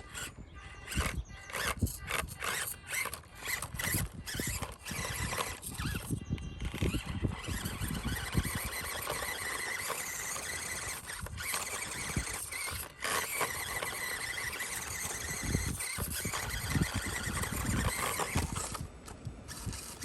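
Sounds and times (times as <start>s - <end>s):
electric motor whining: 0.0s - 20.0s
tires scraping and crunching ground: 6.7s - 20.0s.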